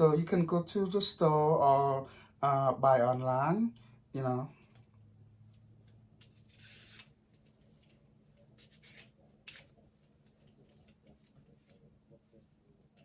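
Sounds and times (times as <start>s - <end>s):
peeler scraping radish skin: 8.6s - 9.7s.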